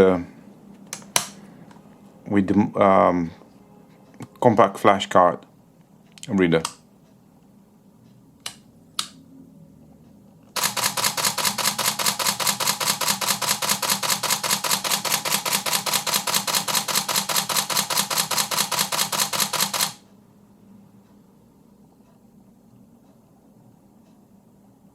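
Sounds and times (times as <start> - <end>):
camera shutter clicks: 10.6 - 20.0.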